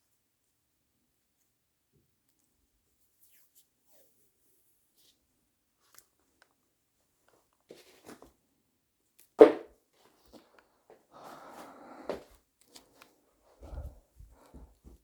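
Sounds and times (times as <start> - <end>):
rustling and scraping: 7.7 - 8.4.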